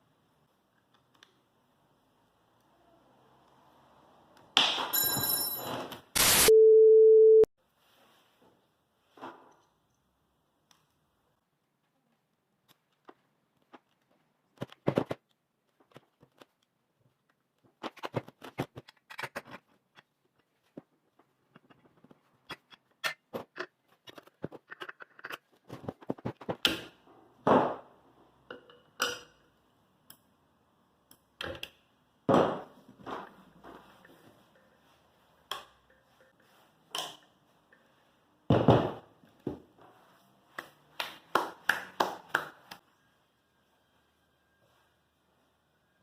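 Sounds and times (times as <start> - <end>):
clicks and knocks of objects handled: 12.6 - 26.9.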